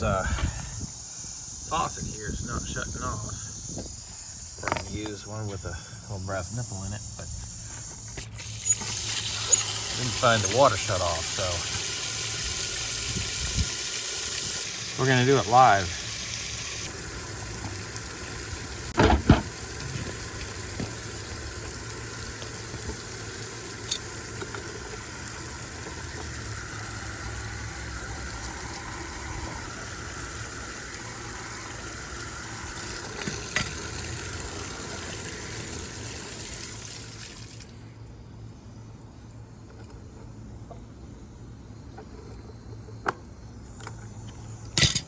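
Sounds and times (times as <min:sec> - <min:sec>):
water running from faucet: 0:08.4 - 0:37.7.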